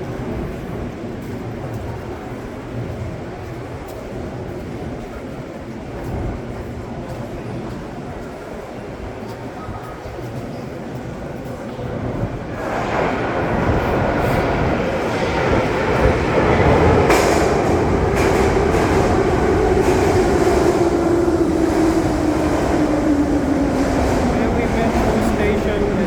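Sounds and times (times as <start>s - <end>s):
subway train running: 0.0s - 26.0s.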